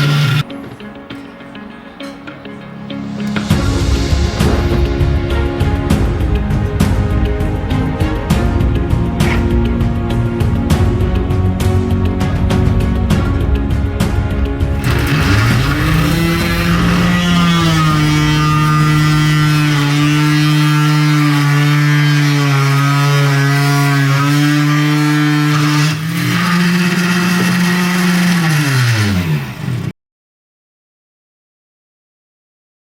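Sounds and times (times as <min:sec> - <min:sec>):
small electric drill motor whining: 0:00.0 - 0:00.4, 0:14.8 - 0:21.1.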